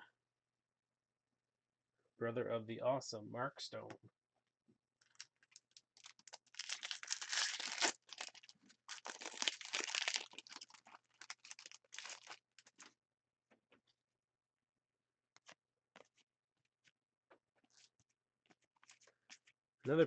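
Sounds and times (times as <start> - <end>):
foil wrapper crinkling and tearing: 5.0 - 12.9.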